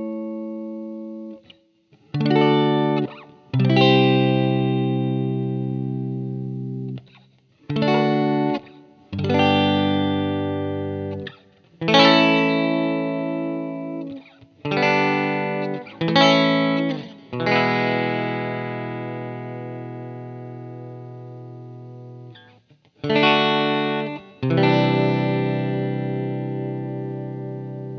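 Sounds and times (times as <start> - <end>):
guitar chords through effects: 0.0 - 27.9.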